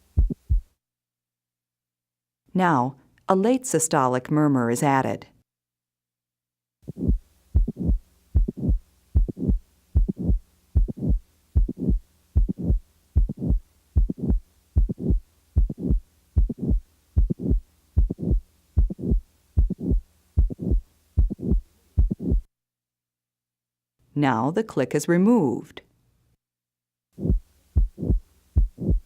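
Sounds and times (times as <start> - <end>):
heart murmur: 0.0 - 0.7, 6.9 - 22.5, 27.2 - 29.0
heartbeat lub-dub: 0.0 - 0.8, 6.9 - 22.5, 27.2 - 29.0
heart valve click: 0.1 - 0.7, 6.9 - 22.5, 27.2 - 29.0
faint steady hum: 6.8 - 22.5, 27.2 - 29.0.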